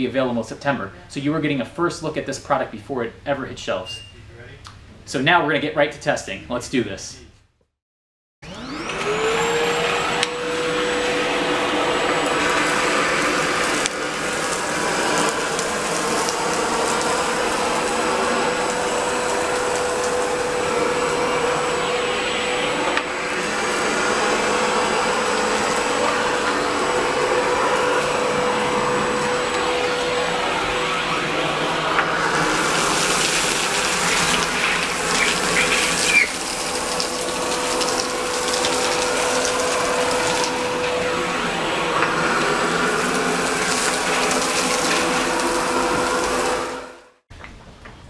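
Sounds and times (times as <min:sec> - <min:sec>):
vacuum motor high whine: 0:08.4 - 0:47.2.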